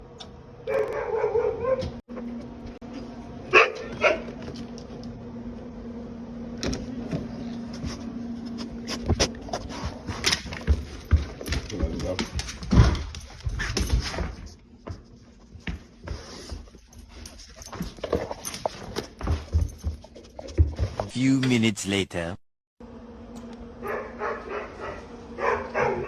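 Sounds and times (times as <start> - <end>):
dog barking: 0.7 - 1.9, 3.5 - 4.3, 23.8 - 26.0.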